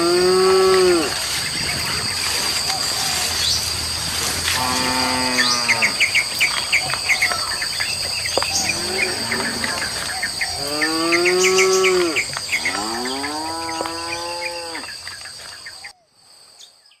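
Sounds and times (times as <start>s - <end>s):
birds chirping: 0.0s - 16.0s
high insect drone: 0.0s - 17.0s
cattle mooing: 4.4s - 6.0s, 10.6s - 14.9s.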